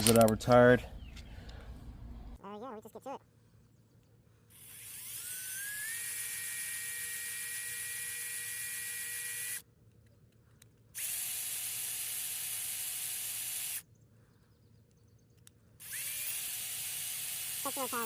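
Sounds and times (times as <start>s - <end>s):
electric drill whining: 4.5s - 9.6s, 11.0s - 13.8s, 15.8s - 18.0s.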